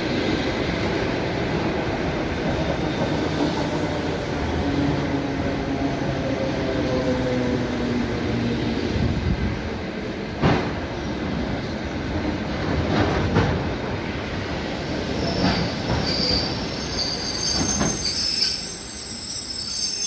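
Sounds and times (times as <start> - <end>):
train rumbling: 0.0 - 20.0
wheel and brake squeal: 15.2 - 20.0.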